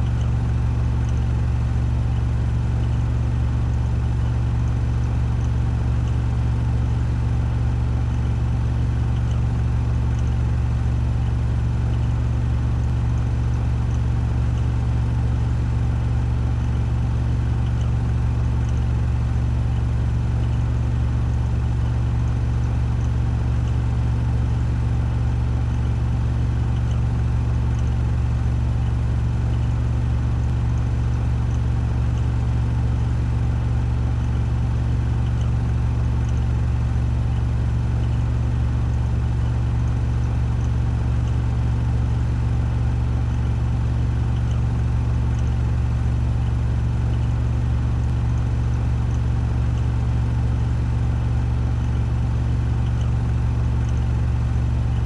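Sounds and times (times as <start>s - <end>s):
washing machine spin drone: 0.0s - 55.0s.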